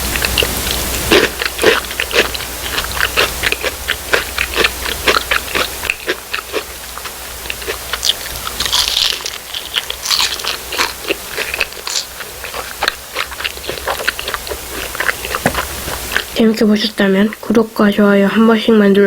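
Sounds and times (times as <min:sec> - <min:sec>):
chewing crispy fried food: 0:00.0 - 0:16.4.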